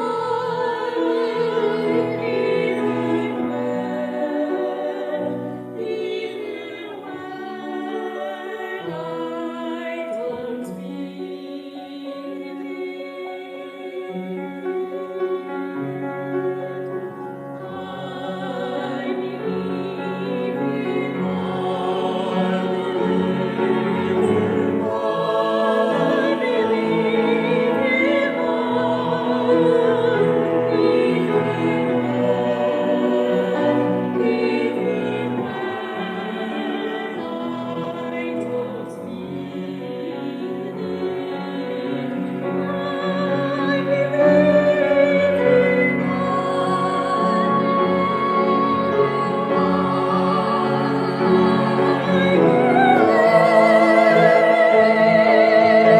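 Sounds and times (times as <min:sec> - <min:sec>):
classical singing with vibrato: 0:00.0 - 0:55.9
sustained instrumental accompaniment: 0:11.9 - 0:55.9.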